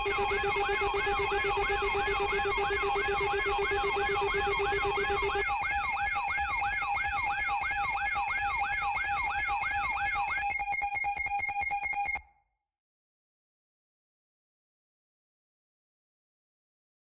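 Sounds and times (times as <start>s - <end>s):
steady beeping tones: 0.0s - 6.6s
rapid pulsing beep: 0.0s - 12.2s
siren sweeping up and down: 0.0s - 12.2s.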